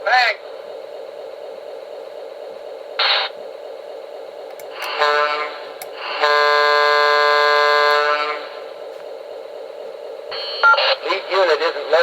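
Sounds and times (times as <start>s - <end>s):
diesel locomotive engine idling: 0.0s - 12.0s
long steady horn blast: 4.9s - 8.6s.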